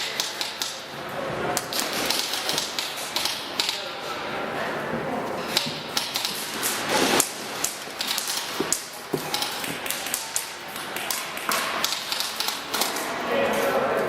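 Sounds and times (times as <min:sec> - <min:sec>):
airsoft guns firing: 0:01.6 - 0:03.8.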